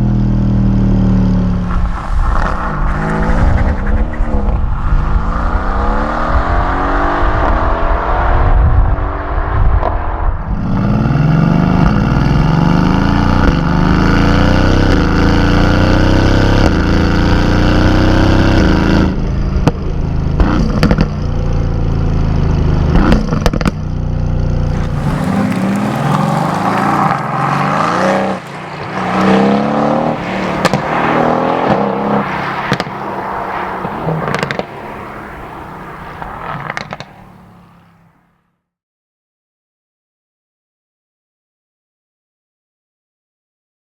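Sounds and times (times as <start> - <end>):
car exhaust accelerating: 0.0 - 38.2
exhaust pops and crackles: 19.5 - 21.4, 22.8 - 24.0, 24.6 - 37.3.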